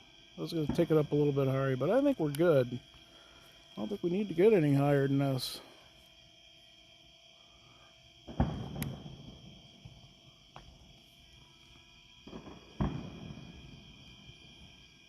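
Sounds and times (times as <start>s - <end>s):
crickets chirring: 0.0s - 15.0s
distant fireworks booming: 0.4s - 5.8s, 8.2s - 11.4s, 12.2s - 15.0s
faint firework cracks: 8.3s - 11.0s, 12.2s - 13.9s.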